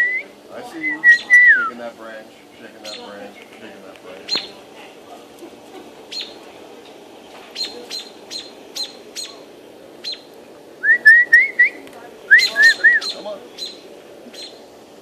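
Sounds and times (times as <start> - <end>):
bird alarm calls: 0.8 - 1.7, 2.6 - 3.6, 4.2 - 4.7, 6.0 - 10.3, 11.0 - 14.7.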